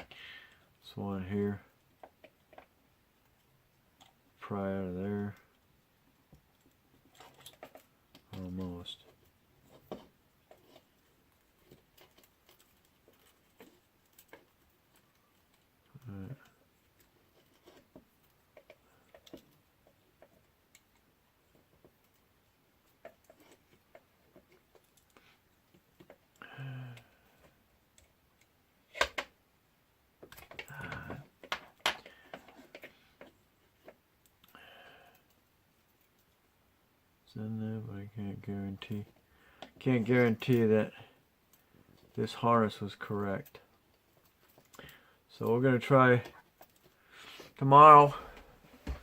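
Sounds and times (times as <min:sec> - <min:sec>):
rustling: 0:06.3 - 0:29.4
plastic parts clicking: 0:22.8 - 0:29.4, 0:30.2 - 0:35.4.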